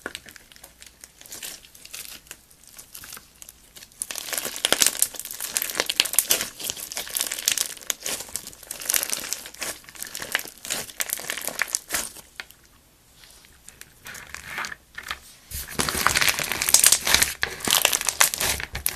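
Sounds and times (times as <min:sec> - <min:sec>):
slime squeezed with crackling pops: 0:04.0 - 0:12.3, 0:15.8 - 0:18.9.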